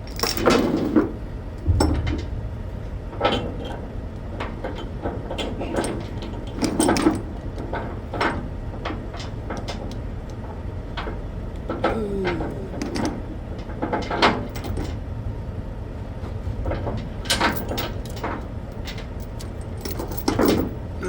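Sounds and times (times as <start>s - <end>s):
chain clanking and rattling: 0.0s - 1.1s, 4.6s - 10.0s, 11.8s - 15.0s, 16.6s - 21.0s.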